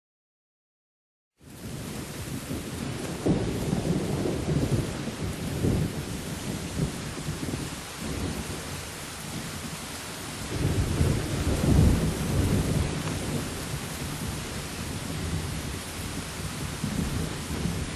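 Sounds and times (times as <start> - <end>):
steady rain hissing: 1.4 - 17.9
thunder rolling: 2.2 - 8.6, 10.5 - 17.9.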